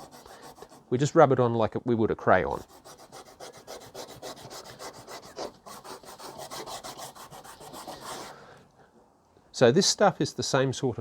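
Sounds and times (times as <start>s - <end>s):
compound bar scratching on leather strop: 0.0s - 0.8s, 2.6s - 8.3s.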